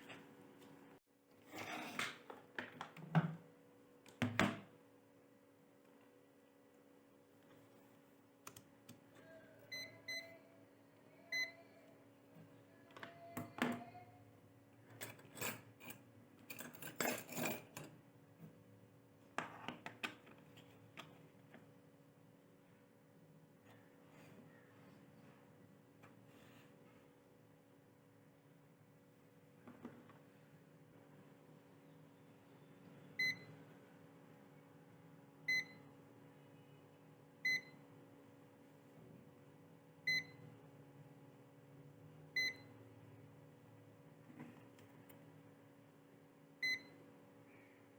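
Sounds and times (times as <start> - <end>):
faint steady hum: 2.6 - 47.9
metal tools clinking: 15.0 - 17.9.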